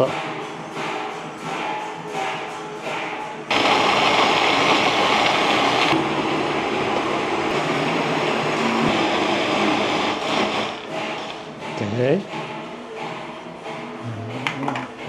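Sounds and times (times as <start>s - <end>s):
electric blender running: 3.5s - 11.5s.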